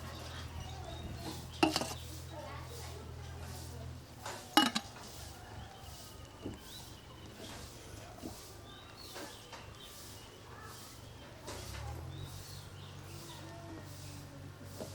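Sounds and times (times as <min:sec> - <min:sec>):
dishes clattering: 0:01.4 - 0:02.0, 0:04.6 - 0:05.0.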